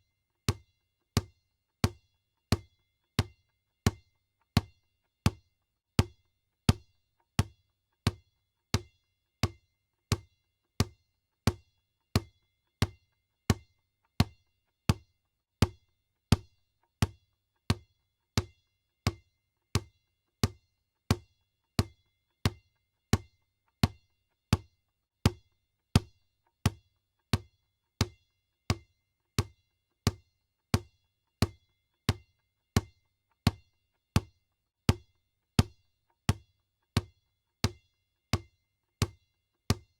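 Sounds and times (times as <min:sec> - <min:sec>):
basketball bouncing on floor: 0:00.5 - 0:02.6.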